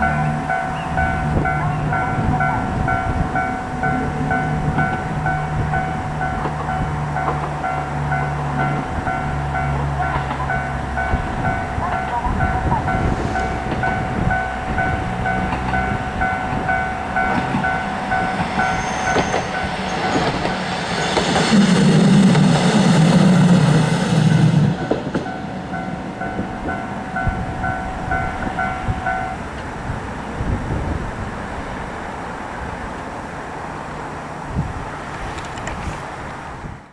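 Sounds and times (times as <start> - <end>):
level-crossing bell ringing: 0.0 - 29.6
diesel railcar passing: 0.0 - 36.9.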